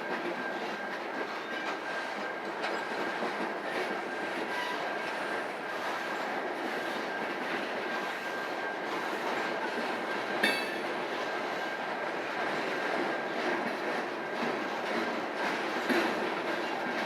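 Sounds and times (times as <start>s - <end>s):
train wheels clattering on rails: 0.0s - 17.0s
faint high squeal: 4.5s - 6.0s.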